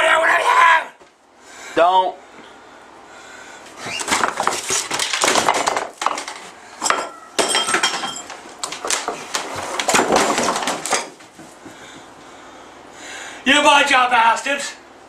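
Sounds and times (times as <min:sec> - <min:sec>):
dishes and pots clattering: 0:05.5 - 0:08.4.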